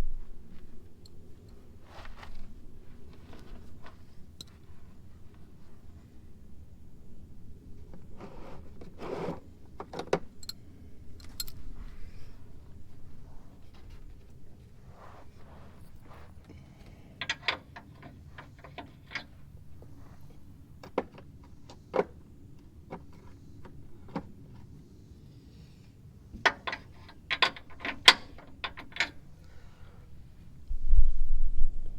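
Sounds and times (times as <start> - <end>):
hand tools clicking on metal: 11.2 - 11.6, 17.2 - 19.3.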